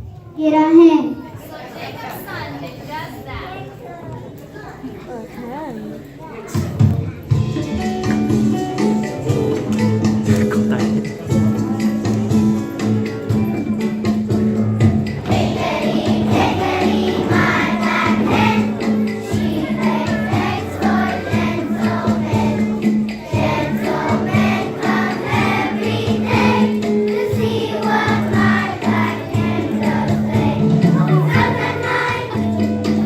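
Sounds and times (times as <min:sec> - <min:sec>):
instrumental backing with bass: 0:07.3 - 0:33.0
voices singing: 0:15.0 - 0:33.0.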